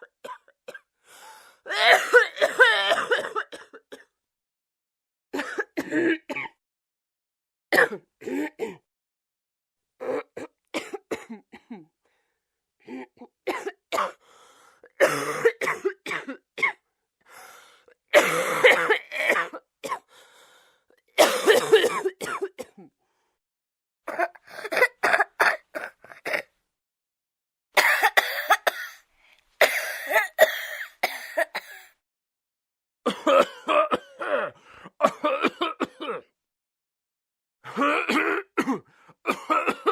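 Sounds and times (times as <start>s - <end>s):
person coughing: 1.7s - 4.1s, 5.4s - 6.6s, 7.8s - 8.9s, 10.0s - 11.9s, 12.9s - 14.2s, 15.0s - 16.8s, 18.2s - 20.1s, 21.2s - 22.9s, 24.1s - 26.5s, 27.8s - 29.0s, 29.6s - 32.0s, 33.1s - 36.3s, 37.7s - 39.9s
throat clearing: 37.7s - 39.9s.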